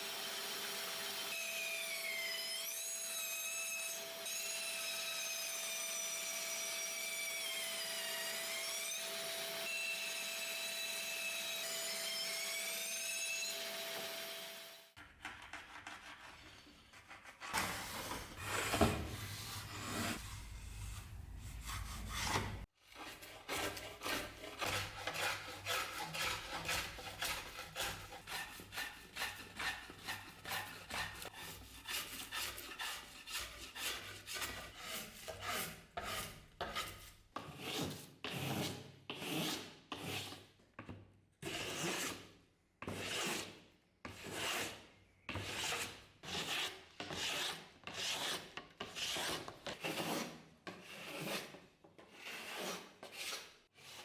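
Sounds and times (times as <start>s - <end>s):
file scraping back and forth: 14.9s - 40.6s, 41.4s - 54.0s.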